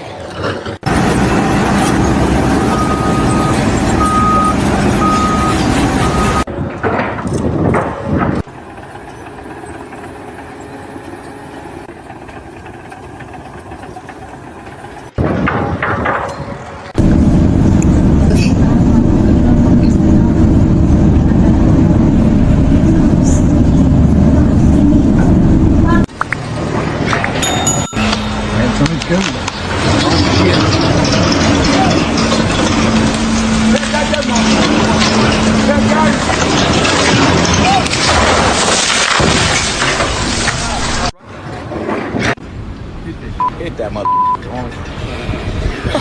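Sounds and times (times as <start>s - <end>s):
heavy vehicle engine running: 0.9s - 6.5s
reversing alarm beeping: 2.6s - 6.5s.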